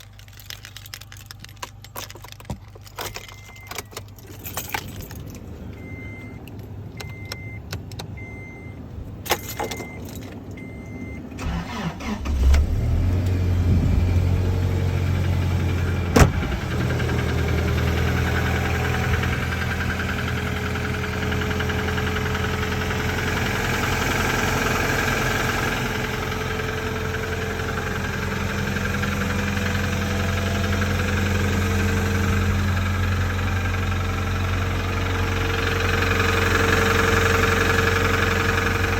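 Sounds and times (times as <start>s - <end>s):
keys jingling and clicks: 0.0s - 8.2s, 9.1s - 10.6s
car chime beeping: 5.4s - 12.2s
engine cranking and starting: 9.3s - 13.5s
engine idling with knock: 16.0s - 23.5s.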